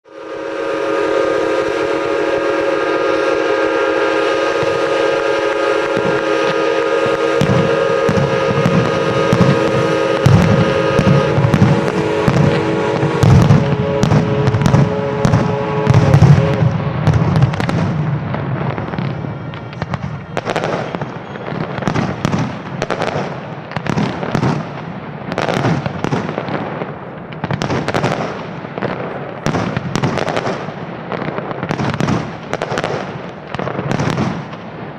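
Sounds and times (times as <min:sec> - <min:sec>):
held horn chord: 0:00.1 - 0:16.8
fireworks booming and crackling: 0:00.2 - 0:34.9.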